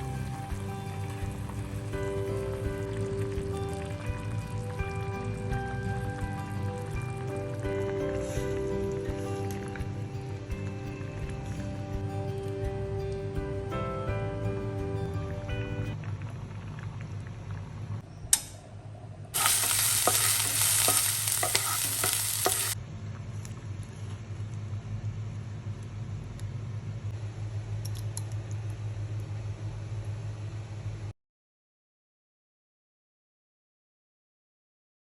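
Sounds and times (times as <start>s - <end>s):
food sizzling in hot oil: 0.0s - 8.7s, 19.4s - 22.8s.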